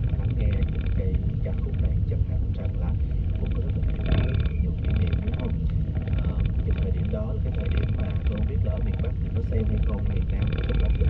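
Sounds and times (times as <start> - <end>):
faint muffled voices: 0.0 - 11.0
low vehicle rumble: 0.0 - 11.0.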